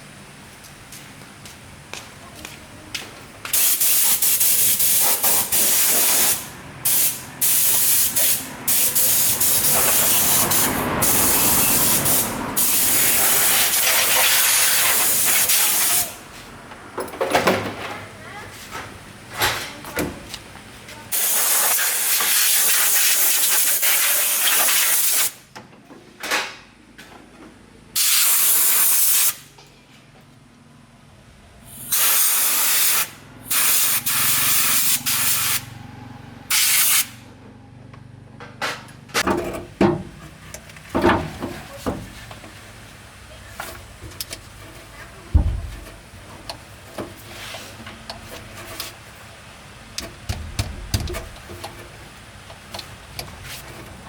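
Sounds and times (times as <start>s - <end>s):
pressurised spray hissing: 3.6s - 16.2s
knocks and clicks: 50.0s - 51.8s.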